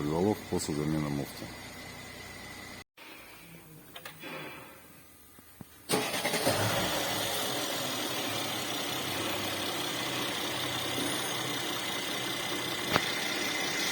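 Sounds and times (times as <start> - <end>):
car engine starting and idling: 5.9 - 13.9.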